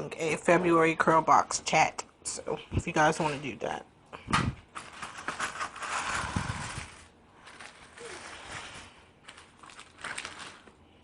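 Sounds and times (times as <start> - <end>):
packaging rustling: 4.7 - 11.0.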